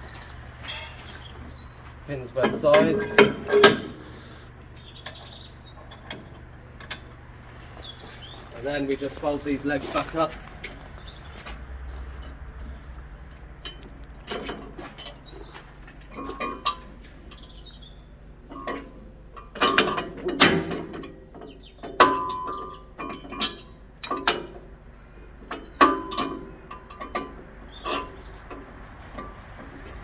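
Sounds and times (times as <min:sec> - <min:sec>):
metal parts clanking: 0:00.6 - 0:01.6, 0:02.3 - 0:04.4, 0:13.6 - 0:17.5.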